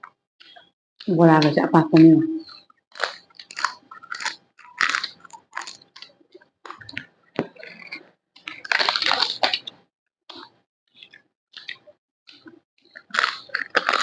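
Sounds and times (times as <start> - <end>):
wet chewing and crunching: 1.4 - 14.0.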